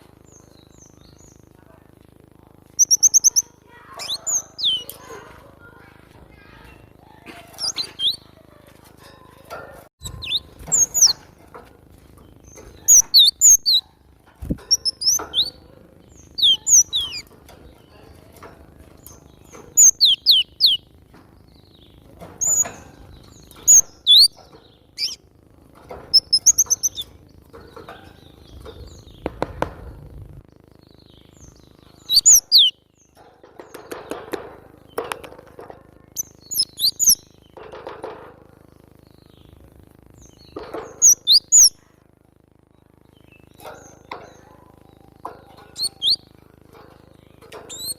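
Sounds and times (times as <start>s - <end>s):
bird whistling song: 2.8s - 3.4s, 4.0s - 4.9s, 7.6s - 8.2s, 10.0s - 11.2s, 12.9s - 13.9s, 19.8s - 20.8s, 23.5s - 24.4s, 25.0s - 25.2s, 32.0s - 32.8s, 36.2s - 37.3s, 41.0s - 41.8s, 45.8s - 46.3s, 47.7s - 47.9s.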